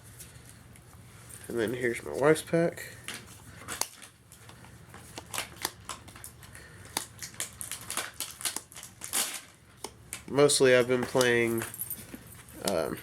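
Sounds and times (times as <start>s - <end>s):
foil wrapper crinkling: 3.8s - 10.3s.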